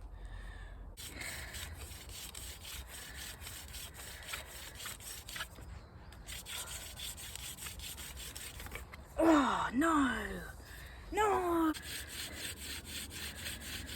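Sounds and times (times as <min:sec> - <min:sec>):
wood rubbing on wood: 0:01.0 - 0:05.6, 0:06.2 - 0:08.9, 0:11.7 - 0:13.9.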